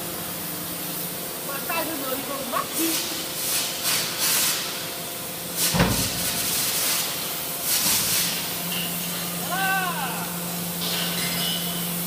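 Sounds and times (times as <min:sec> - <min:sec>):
wood shavings rustling and hissing: 0:05.5 - 0:09.9.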